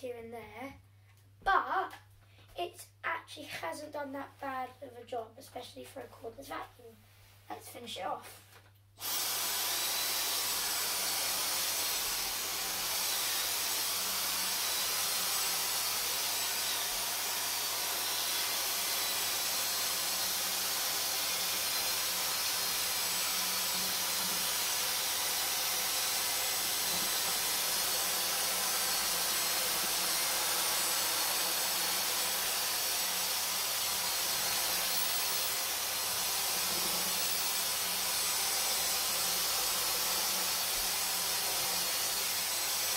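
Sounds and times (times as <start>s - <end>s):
cordless vacuum running on carpet: 9.0s - 42.9s.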